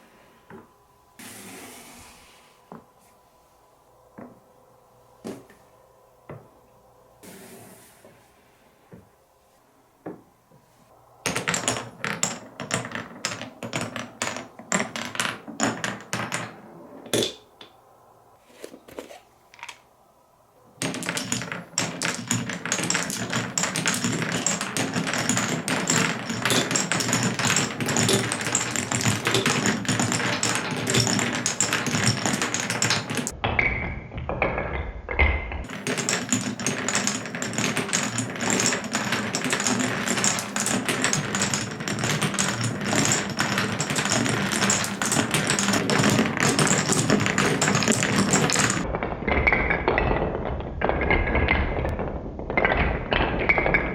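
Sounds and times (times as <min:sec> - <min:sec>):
marbles rolling on wooden tracks: 0:11.2 - 0:17.8, 0:20.7 - 0:33.4, 0:34.4 - 0:53.9.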